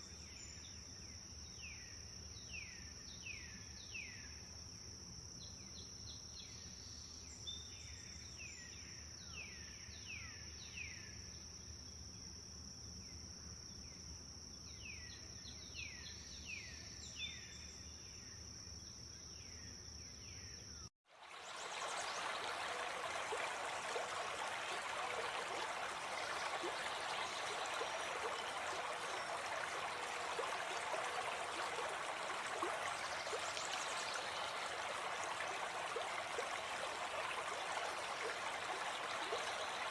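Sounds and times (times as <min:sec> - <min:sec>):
flowing water rushing: 0:21.1 - 0:39.9.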